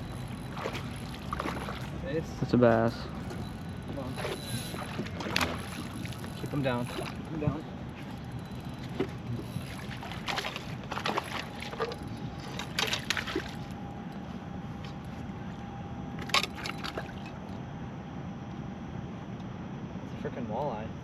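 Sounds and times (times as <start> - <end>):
fish splashing and thrashing: 0.0 - 2.1, 3.1 - 13.8, 16.2 - 17.4.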